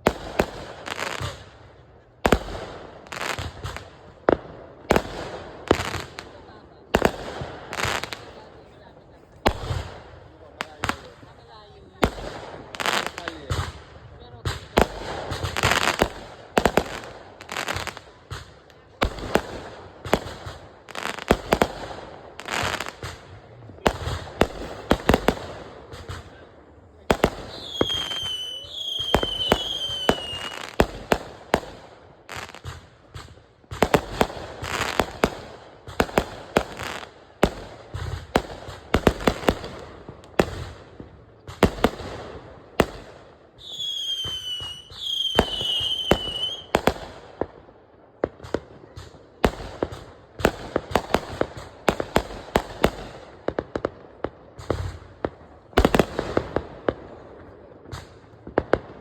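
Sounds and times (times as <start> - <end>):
fireworks bangs and pops: 0.0 - 59.0
fireworks whistles falling in pitch: 27.4 - 30.8, 43.6 - 46.8.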